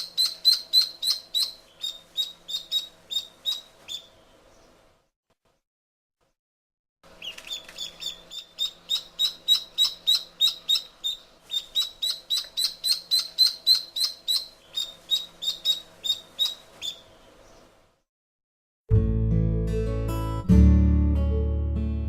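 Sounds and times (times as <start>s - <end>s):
duckling peeping: 0.0s - 4.8s, 7.1s - 17.8s.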